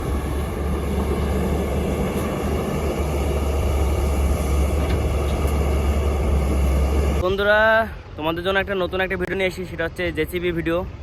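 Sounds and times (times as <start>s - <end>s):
heavy diesel machinery rumbling: 0.0s - 8.2s.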